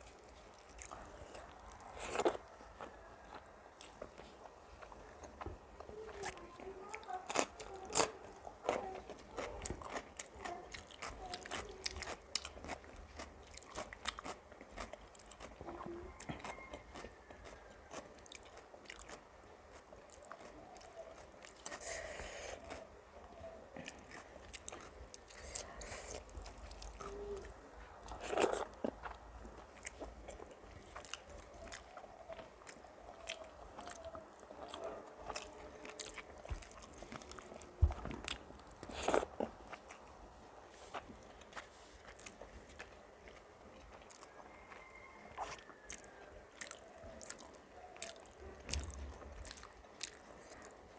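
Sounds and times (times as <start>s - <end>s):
person chewing and crunching food: 0.0s - 50.9s.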